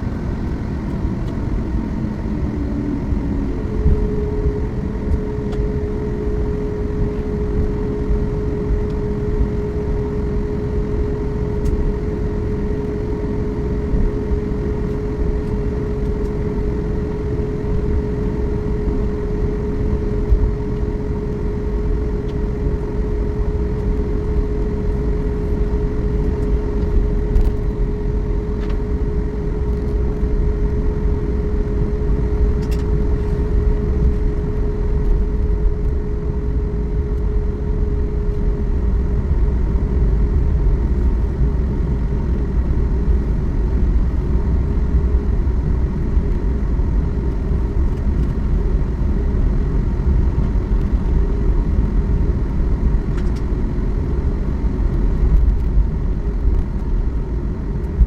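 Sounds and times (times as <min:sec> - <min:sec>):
engines and air conditioning rumble: 0:00.0 - 0:58.0
high-pitched hum: 0:00.0 - 0:58.0.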